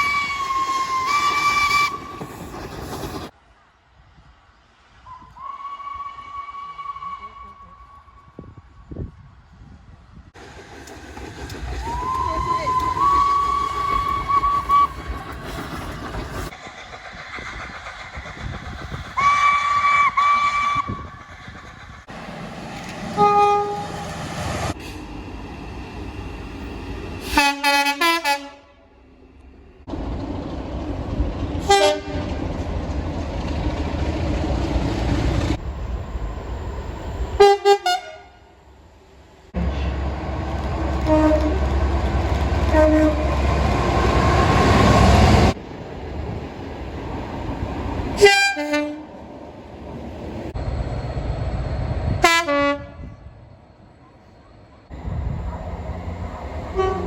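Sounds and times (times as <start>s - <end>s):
rumble of trains running: 0.0s - 57.0s
train horn blasts: 5.1s - 8.5s, 23.1s - 24.2s, 27.3s - 28.9s, 31.6s - 32.4s, 37.4s - 38.5s, 41.0s - 41.8s, 42.6s - 43.4s, 48.2s - 49.1s, 52.2s - 53.2s, 56.7s - 57.0s.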